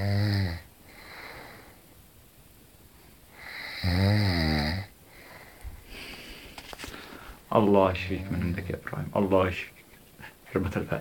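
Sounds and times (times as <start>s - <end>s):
man snoring loudly: 0.0s - 0.7s, 3.4s - 4.9s
soft breath: 0.8s - 2.0s, 5.1s - 7.5s.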